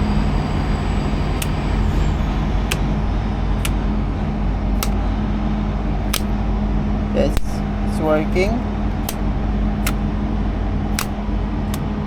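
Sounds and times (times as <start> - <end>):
cooling fan drone: 0.0 - 12.0
electrical hum: 0.0 - 12.0
sharp switch clicks: 1.4 - 1.9, 2.6 - 5.2, 6.0 - 6.5, 7.3 - 7.7, 8.4 - 10.3, 10.9 - 12.0.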